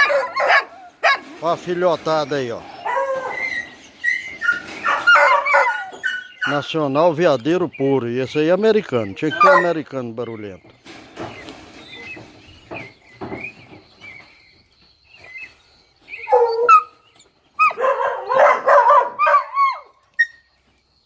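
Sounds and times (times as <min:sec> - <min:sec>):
dog whining: 0:00.0 - 0:01.3, 0:02.4 - 0:06.6, 0:09.2 - 0:09.7, 0:16.1 - 0:20.4
dogs barking and yelping: 0:00.0 - 0:07.1, 0:09.0 - 0:10.4, 0:15.2 - 0:20.5.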